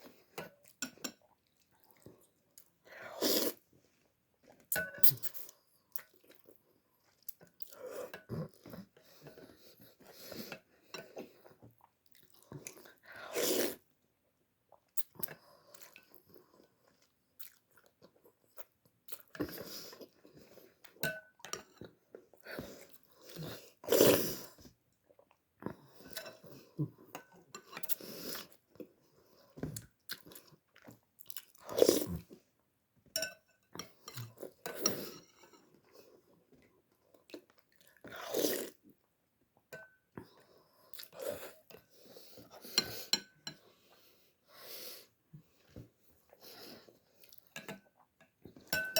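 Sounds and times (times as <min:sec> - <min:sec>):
person chewing noodles: 0:05.0 - 0:13.8, 0:14.7 - 0:21.0, 0:22.2 - 0:32.5.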